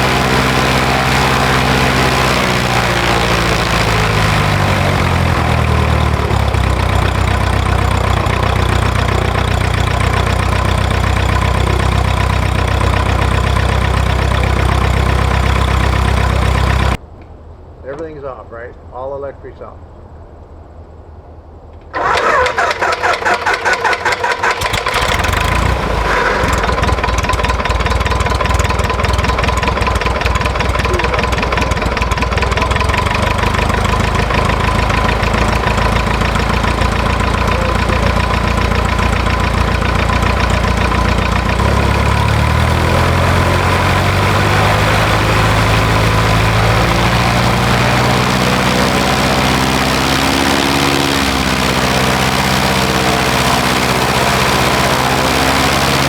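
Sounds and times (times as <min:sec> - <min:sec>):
aircraft engine starting and idling: 0:00.0 - 0:17.0, 0:21.9 - 0:56.0.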